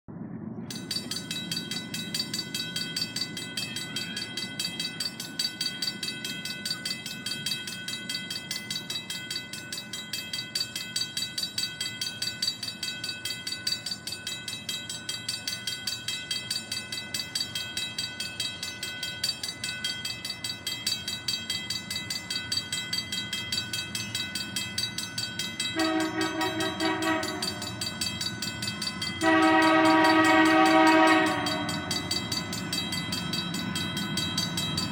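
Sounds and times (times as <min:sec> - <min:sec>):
locomotive rumble: 0:00.1 - 0:34.9
locomotive bell ringing: 0:00.7 - 0:34.9
train air horn chord: 0:25.7 - 0:27.8, 0:29.2 - 0:32.0.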